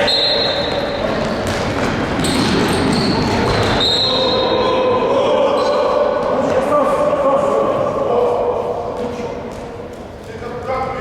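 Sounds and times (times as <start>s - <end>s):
ball bouncing on floor: 0.6s - 3.8s
players' footsteps: 0.6s - 3.8s, 6.1s - 11.0s.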